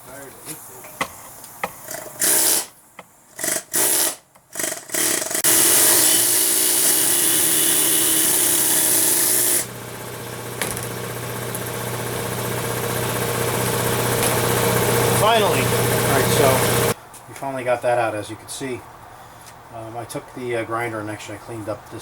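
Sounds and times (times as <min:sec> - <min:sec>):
power tool running: 0:03.4 - 0:17.0
steady machine hum: 0:07.3 - 0:17.0.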